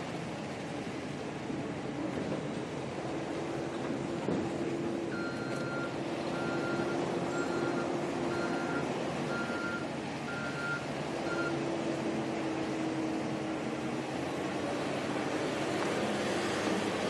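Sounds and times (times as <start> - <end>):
engine noise: 0.0 - 17.0
reversing alarm beeping: 5.1 - 11.6.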